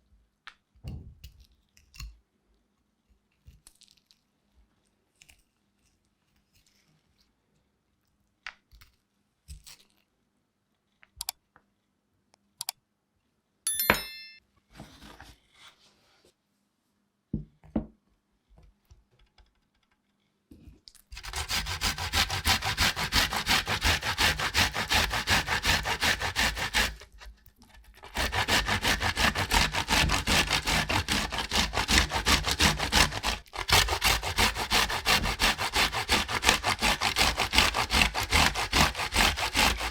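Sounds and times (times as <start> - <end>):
grating on a kitchen grater: 21.2 - 39.9.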